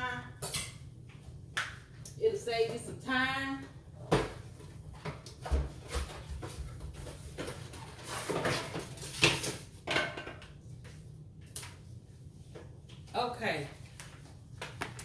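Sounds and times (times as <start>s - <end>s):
utensils and bowl clattering: 7.2s - 10.4s.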